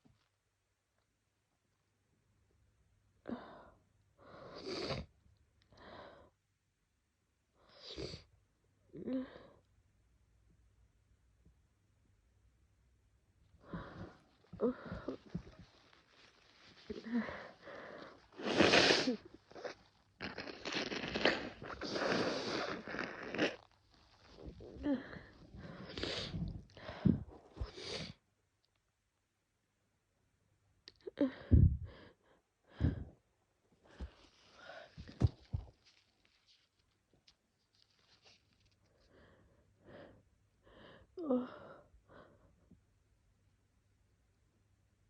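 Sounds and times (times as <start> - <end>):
steady noise with crackles: 14.1 - 18.4.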